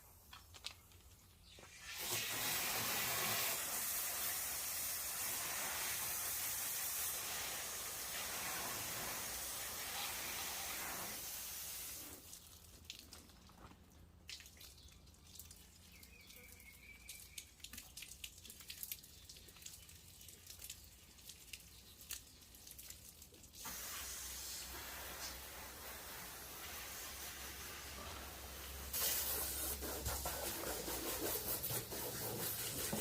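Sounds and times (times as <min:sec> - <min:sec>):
water spraying: 0:01.5 - 0:13.0, 0:15.6 - 0:33.0
water dripping: 0:12.2 - 0:23.7.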